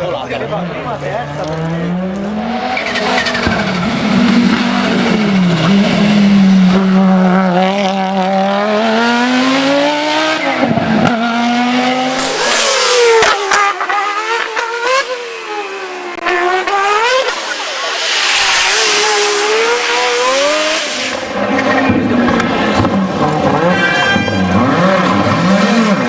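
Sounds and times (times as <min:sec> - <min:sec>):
rally car engine revving: 0:00.3 - 0:26.0
sharp exhaust cracks: 0:11.8 - 0:22.6.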